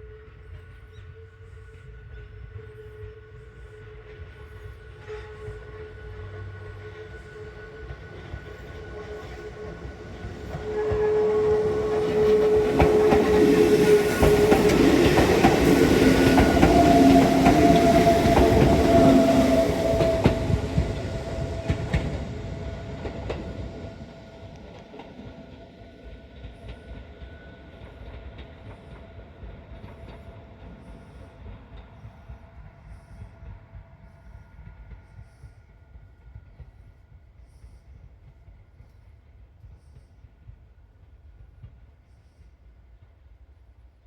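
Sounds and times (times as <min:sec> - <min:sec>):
train wheels clattering: 0:06.3 - 0:36.7.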